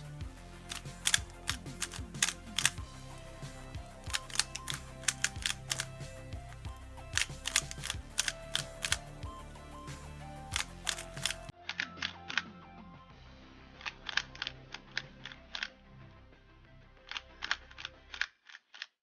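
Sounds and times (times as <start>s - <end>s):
speedcube clicking: 0.0s - 3.2s, 3.9s - 9.2s, 10.4s - 11.6s, 17.1s - 19.0s
background music: 0.0s - 18.3s.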